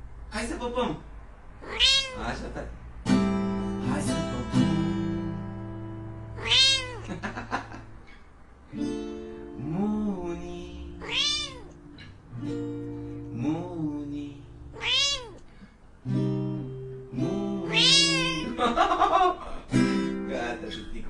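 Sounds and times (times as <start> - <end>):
cat meowing: 1.6 - 2.3, 6.4 - 7.1, 11.0 - 11.8, 14.7 - 15.4, 17.6 - 18.6
acoustic guitar chords: 3.0 - 6.4, 8.7 - 14.8, 16.0 - 21.0.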